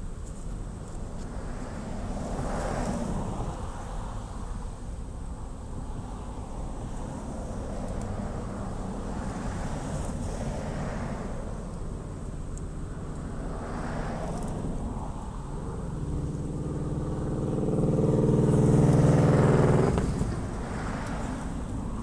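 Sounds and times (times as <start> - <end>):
outdoor road noise: 0.0 - 22.0
vehicle engine passing by: 15.6 - 22.0.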